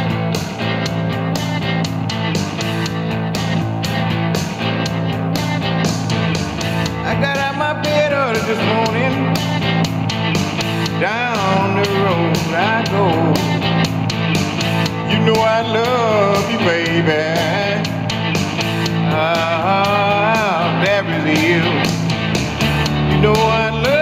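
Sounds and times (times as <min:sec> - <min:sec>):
guitar song from speaker: 0:00.0 - 0:24.0
person singing: 0:05.5 - 0:22.1, 0:23.0 - 0:24.0.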